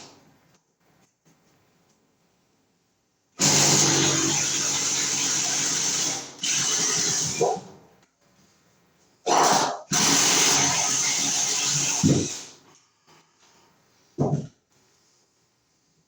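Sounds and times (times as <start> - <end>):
cordless drill boring wood: 3.4 - 7.4, 9.9 - 12.6.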